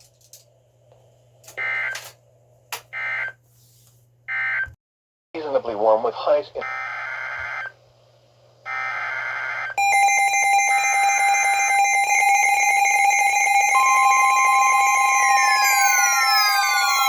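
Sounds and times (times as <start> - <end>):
steady electronic alarm tone: 8.7 - 17.0.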